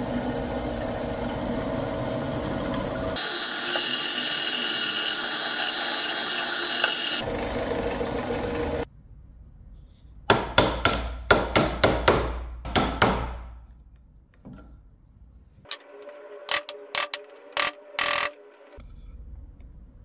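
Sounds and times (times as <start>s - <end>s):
machine running: 0.0s - 8.9s
hammer striking wood: 10.3s - 13.6s.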